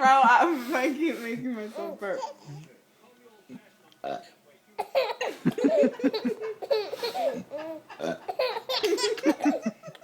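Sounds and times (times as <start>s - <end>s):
adult burping: 4.0s - 4.4s, 8.0s - 8.5s
baby belly-laughing: 4.8s - 10.0s.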